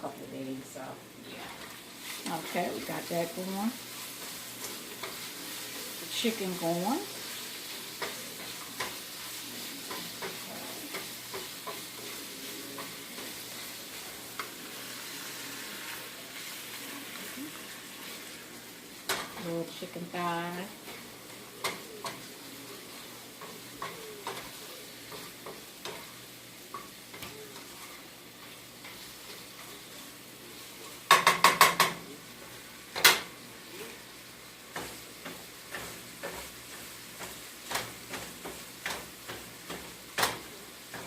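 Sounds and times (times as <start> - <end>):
chicken sizzling in a pan: 0.0 - 41.0.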